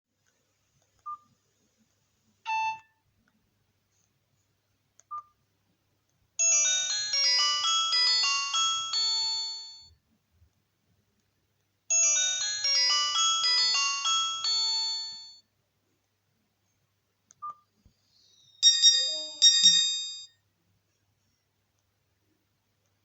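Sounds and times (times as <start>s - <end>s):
short phone beeps: 2.5s - 3.0s
chiming polyphonic ringtone melody: 6.4s - 9.9s, 11.9s - 15.4s, 18.6s - 20.3s.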